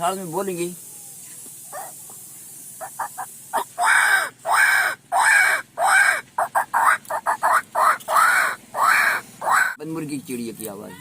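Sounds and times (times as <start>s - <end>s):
man imitating harsh bird calls: 2.8s - 9.8s.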